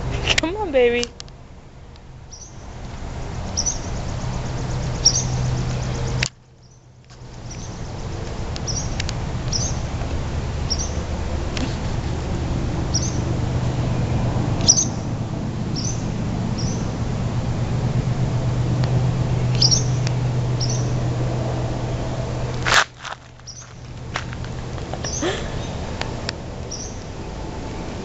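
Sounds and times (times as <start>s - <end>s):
swallows chirping: 3.4s - 6.8s, 7.4s - 9.8s, 10.6s - 11.0s, 12.9s - 13.2s, 14.6s - 15.1s, 15.7s - 17.0s, 19.5s - 21.0s, 23.5s - 23.8s, 25.0s - 25.8s, 26.7s - 27.2s.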